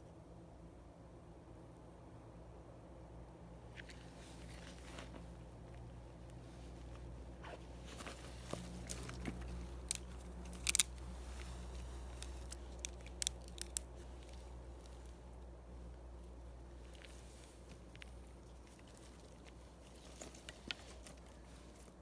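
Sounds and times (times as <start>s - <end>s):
twigs and leaves snapping: 7.9s - 15.2s, 16.8s - 22.0s.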